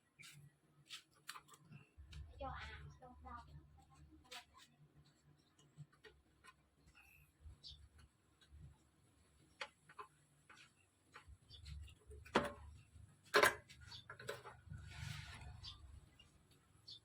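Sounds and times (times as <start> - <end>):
tools clicking and tapping: 13.3 - 14.6.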